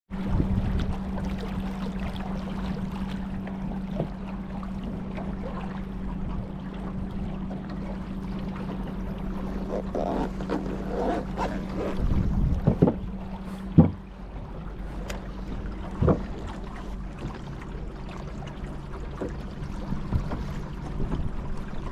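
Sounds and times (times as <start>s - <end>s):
wind on microphone: 0.1s - 3.3s, 9.0s - 14.0s
water lapping against boat: 0.1s - 21.9s.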